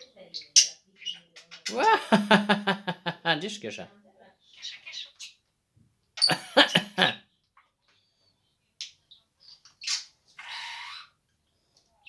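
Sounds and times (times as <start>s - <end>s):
scratchy budgie chatter: 6.2s - 7.1s
budgie coughing: 6.2s - 7.2s
high chirps: 6.2s - 7.2s.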